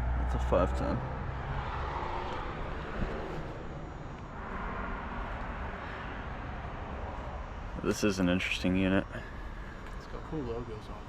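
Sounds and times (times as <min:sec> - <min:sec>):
outdoor background noise: 0:00.0 - 0:11.0.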